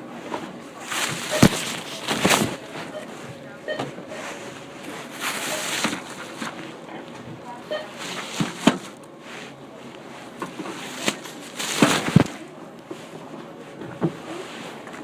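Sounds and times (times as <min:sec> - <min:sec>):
rustling: 0:00.8 - 0:03.1, 0:04.2 - 0:06.8, 0:10.6 - 0:12.4.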